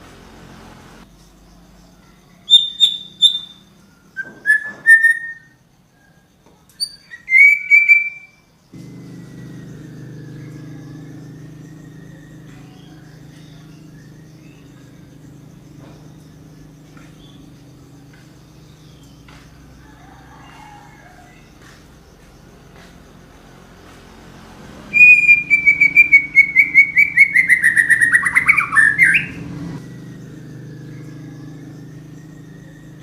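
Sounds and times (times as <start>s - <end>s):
bird singing whistled phrases: 2.5s - 3.6s, 4.2s - 5.5s, 6.8s - 8.4s, 24.9s - 29.4s
steady low hum: 8.6s - 20.2s.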